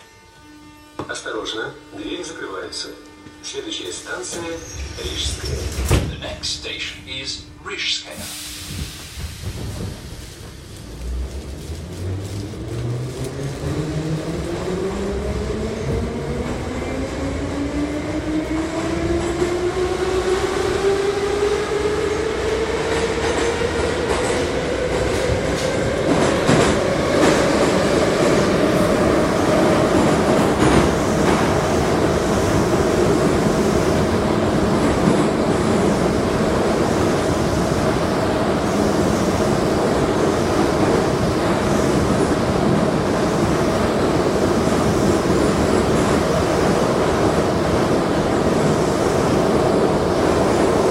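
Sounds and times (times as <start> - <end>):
wheel and rail rumble: 8.2 - 20.9.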